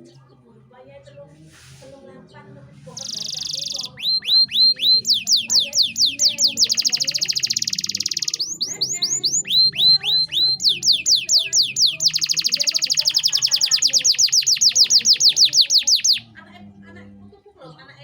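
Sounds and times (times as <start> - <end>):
canary singing whistles and trills: 2.9 - 16.4.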